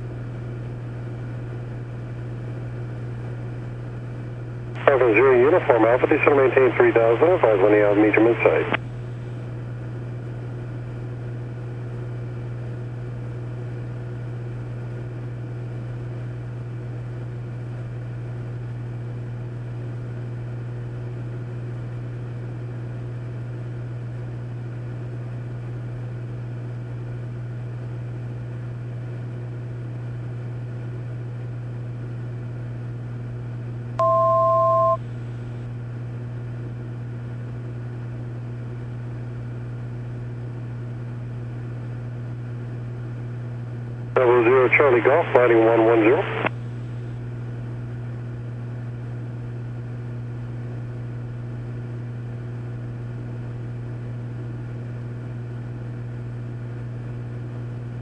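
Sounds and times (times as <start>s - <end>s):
airplane engine and propeller drone: 0.0s - 35.4s, 42.2s - 51.8s
two-tone electronic beep: 34.0s - 35.0s.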